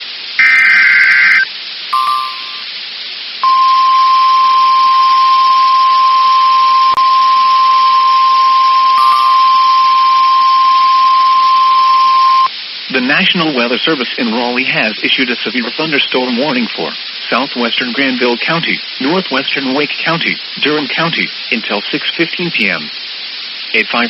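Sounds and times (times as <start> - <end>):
steady high alarm tone: 0.4 - 2.7, 3.4 - 12.5
short double beep: 2.0 - 2.7, 3.4 - 12.5.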